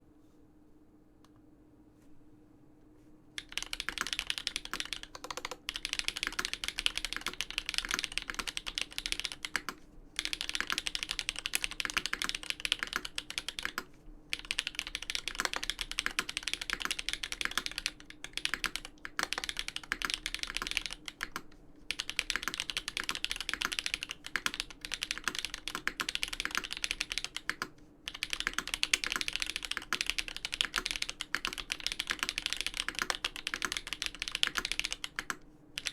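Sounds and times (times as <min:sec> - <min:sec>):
fast mechanical keyboard typing: 0:03.4 - 0:35.9.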